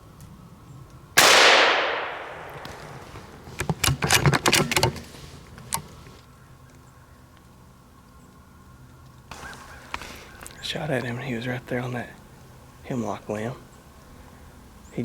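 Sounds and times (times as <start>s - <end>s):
rifle shot echoing: 1.2s - 3.4s
crackles in dry leaves: 2.1s - 3.7s, 5.0s - 12.6s.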